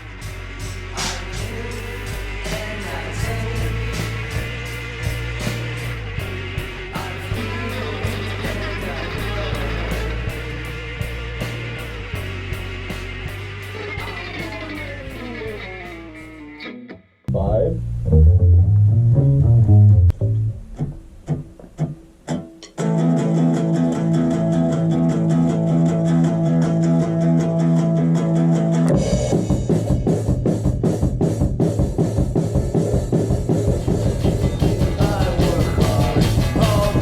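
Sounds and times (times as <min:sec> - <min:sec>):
drum hits: 0:00.0 - 0:15.9, 0:28.9 - 0:37.0
rock band playing: 0:00.0 - 0:37.0.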